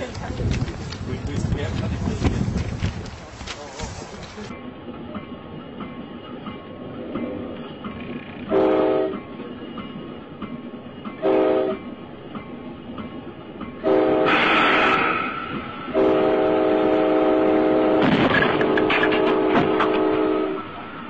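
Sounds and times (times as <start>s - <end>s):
train running noise: 0.0s - 21.0s
locomotive air horn: 8.5s - 9.2s, 11.2s - 11.8s, 13.8s - 15.0s, 15.9s - 20.8s.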